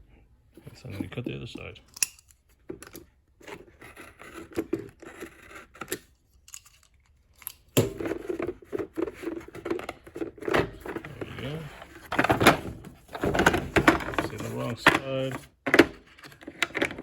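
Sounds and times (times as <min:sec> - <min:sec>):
knife cutting packaging: 0:03.5 - 0:06.8.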